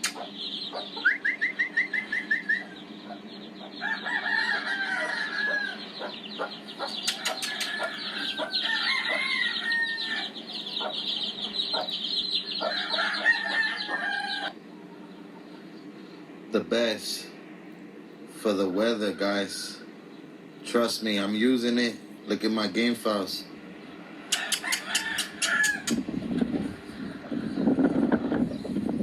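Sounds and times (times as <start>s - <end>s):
hens clucking: 0.0s - 15.6s, 24.1s - 26.0s
roosters crowing: 0.0s - 16.5s, 17.2s - 28.9s
steady low hum: 0.0s - 29.0s.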